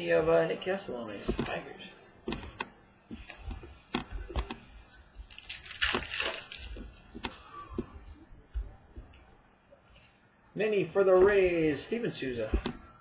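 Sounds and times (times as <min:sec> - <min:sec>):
trading cards clicking and sliding: 0:02.2 - 0:08.0
papery rustle: 0:03.2 - 0:08.0.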